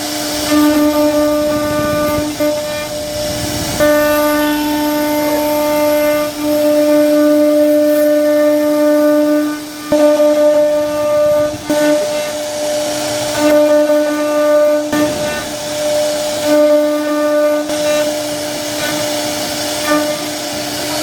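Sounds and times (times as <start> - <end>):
router spindle whining: 0.0 - 16.4.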